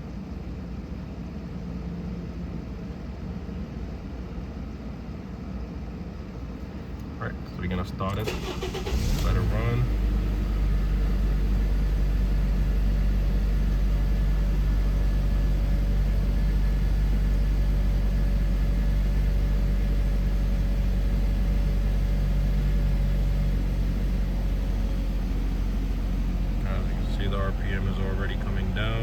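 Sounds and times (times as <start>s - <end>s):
car engine idling fast: 8.1s - 29.0s.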